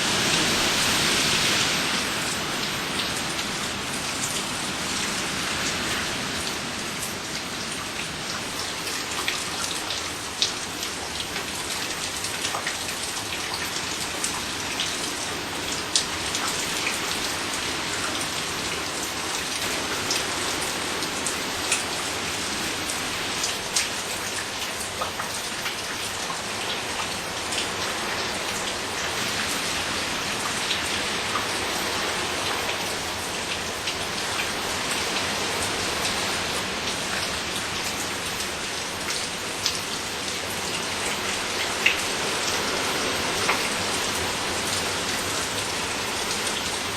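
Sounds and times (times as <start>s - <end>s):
raindrops ticking on surfaces: 0.0s - 46.9s
steady rain: 0.0s - 46.9s.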